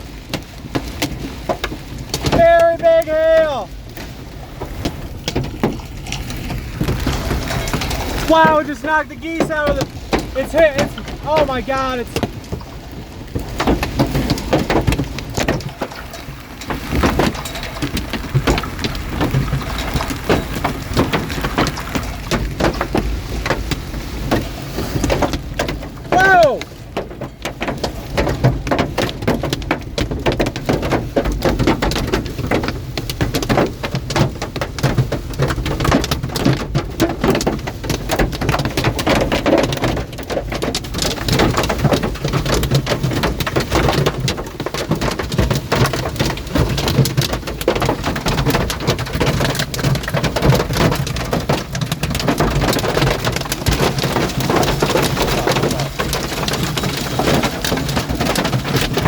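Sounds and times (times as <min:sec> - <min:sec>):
hailstones pounding: 0:00.0 - 0:59.0
heavy rain: 0:00.0 - 0:59.0.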